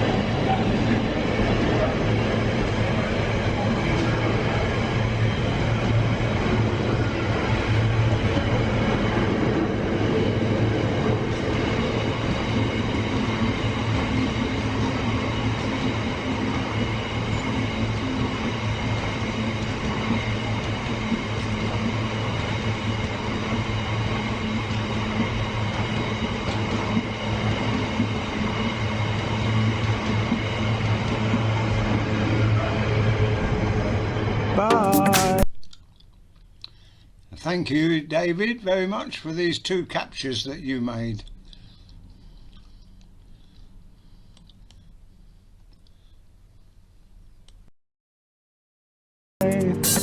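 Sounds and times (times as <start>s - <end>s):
train rumbling: 0.0s - 35.4s
steady higher tones: 34.6s - 35.4s, 49.4s - 50.0s.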